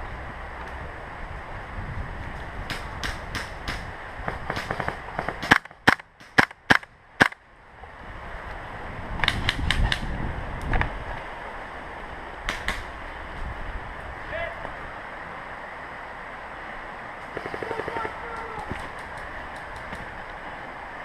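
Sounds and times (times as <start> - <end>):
airsoft gun shots: 4.5 - 7.4.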